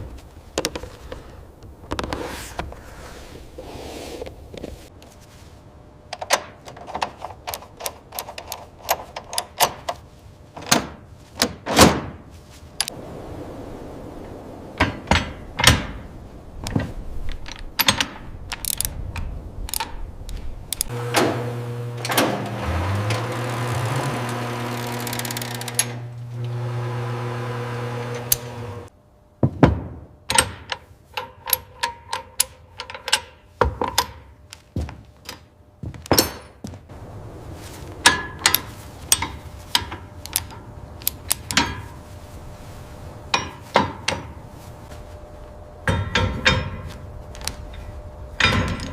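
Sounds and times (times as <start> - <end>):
machine hum: 20.8 - 28.9.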